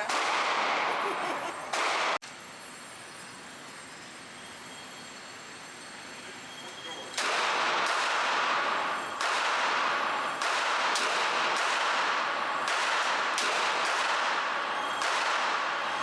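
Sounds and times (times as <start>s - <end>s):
handgun shots with echo: 0.0s - 1.0s, 1.7s - 2.2s, 7.1s - 15.9s.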